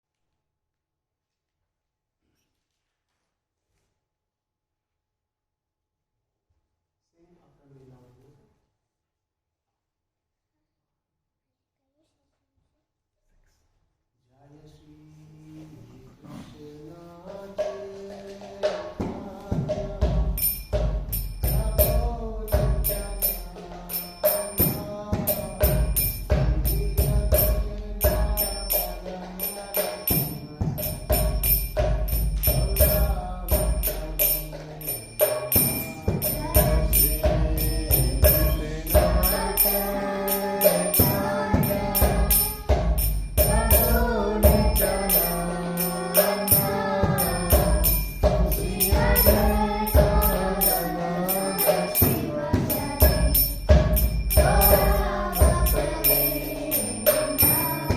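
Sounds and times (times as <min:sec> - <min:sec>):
voices singing chant: 0:15.5 - 0:57.9
rhythmic percussion beat: 0:16.9 - 0:57.9.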